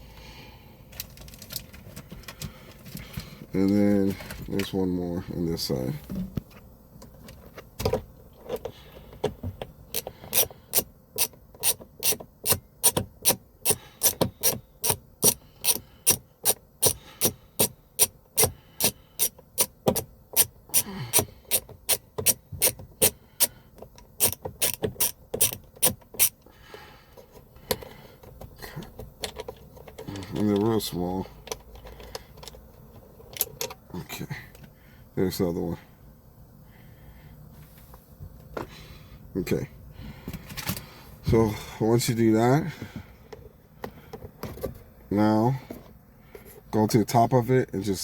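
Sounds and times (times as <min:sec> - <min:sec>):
ratcheting screwdriver clicking: 0:09.9 - 0:26.4.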